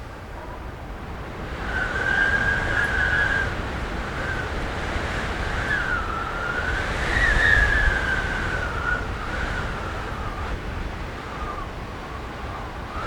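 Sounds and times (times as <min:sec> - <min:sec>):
wind rumble: 0:00.9 - 0:13.0
window whistling in wind: 0:01.1 - 0:13.0.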